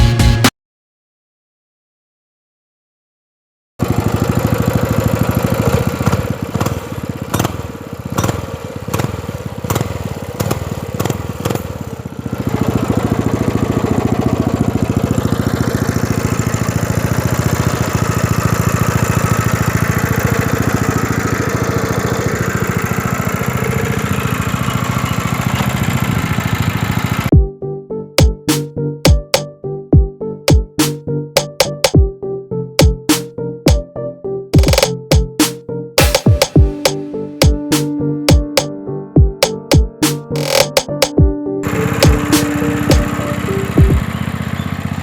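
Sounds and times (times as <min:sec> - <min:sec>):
small diesel engine running: 0:03.8 - 0:27.3, 0:40.4 - 0:45.0.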